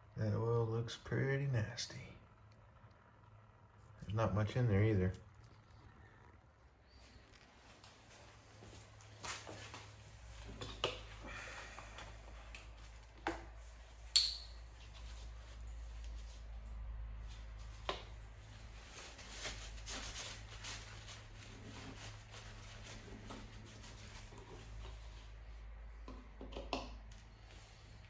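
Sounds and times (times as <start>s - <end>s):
steady low hum: 0.0s - 28.0s
faint rustling: 14.8s - 25.8s.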